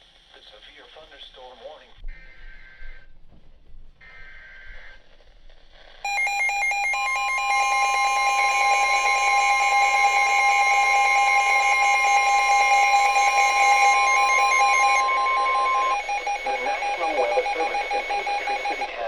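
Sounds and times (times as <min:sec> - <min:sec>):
two-note attention tone: 0:06.1 - 0:18.8
warbling data buzz: 0:06.1 - 0:18.9.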